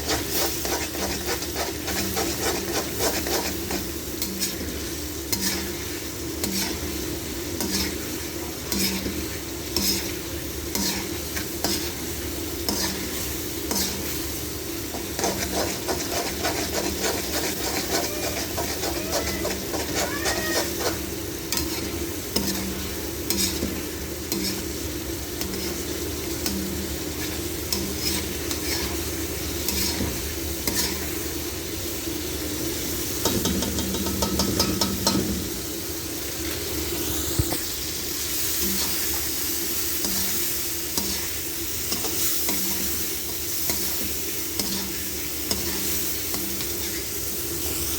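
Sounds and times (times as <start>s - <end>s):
metal spoon scraping pan: 0.0s - 4.7s, 5.3s - 5.8s, 6.4s - 7.0s, 7.6s - 8.0s, 8.7s - 9.2s, 9.8s - 12.0s, 12.7s - 14.2s, 14.9s - 24.7s, 25.4s - 29.0s, 29.6s - 31.1s, 41.0s - 43.0s
chicken sizzling in pan: 0.0s - 47.9s.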